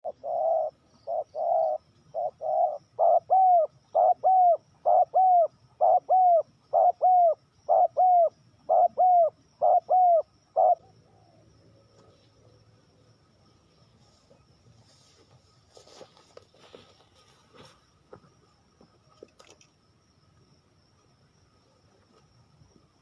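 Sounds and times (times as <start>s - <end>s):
dove cooing: 0.0s - 11.4s.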